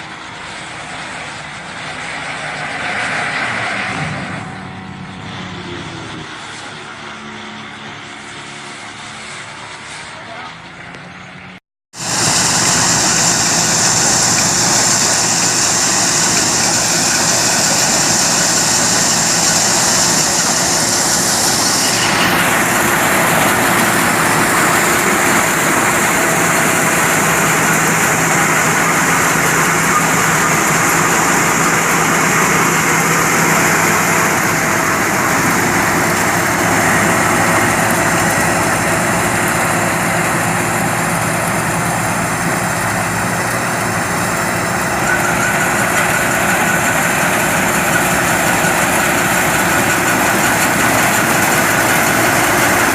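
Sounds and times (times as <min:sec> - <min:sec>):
machine engine running: 0:12.0 - 0:52.9.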